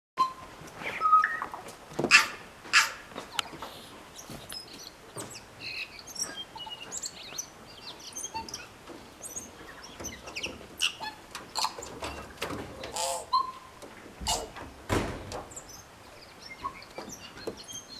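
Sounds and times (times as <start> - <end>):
parrot calling loudly: 1.2 - 3.0.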